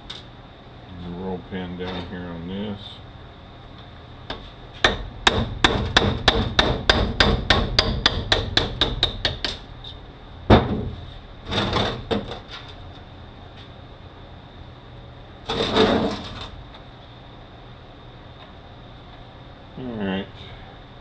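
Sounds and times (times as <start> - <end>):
hammer striking metal: 4.8 - 9.6.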